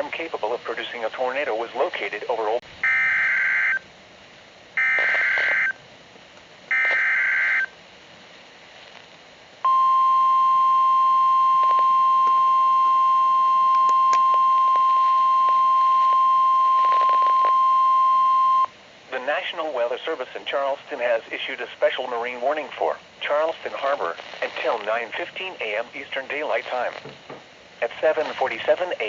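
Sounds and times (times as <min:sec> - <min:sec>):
steady warning alarm tone: 0:02.8 - 0:03.8, 0:04.8 - 0:05.8, 0:06.7 - 0:07.7.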